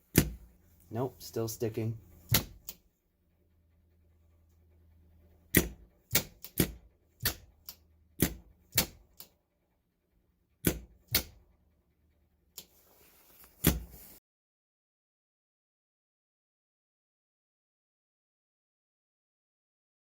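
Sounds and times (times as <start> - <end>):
faint low hum: 0.0 - 14.2.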